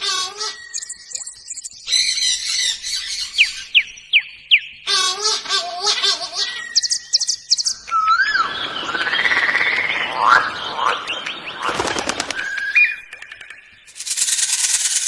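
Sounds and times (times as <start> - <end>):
birds whistling: 0.0 - 4.9, 6.4 - 14.3
quick run of clicks: 11.2 - 15.0.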